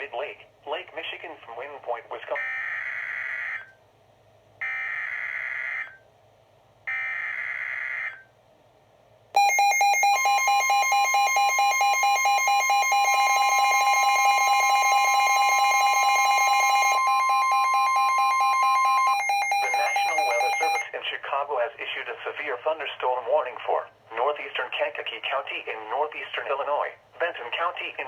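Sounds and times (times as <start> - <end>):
rapidly pulsing alarm: 2.4 - 3.7, 4.6 - 6.0, 6.9 - 8.3, 9.4 - 20.9
steady high alarm tone: 9.4 - 20.9.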